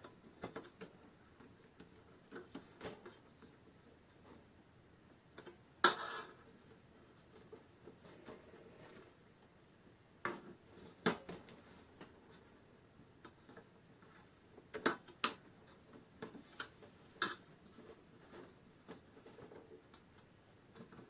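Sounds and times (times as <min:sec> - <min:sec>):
clicks of hand tools and parts: 0:14.7 - 0:18.0.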